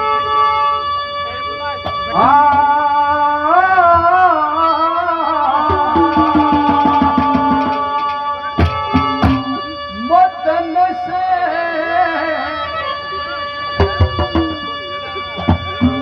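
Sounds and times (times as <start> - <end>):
harmonium chords: 0.0 - 16.0
wavering melody line: 0.0 - 16.0
hand drum strokes: 5.6 - 9.7, 13.8 - 16.0.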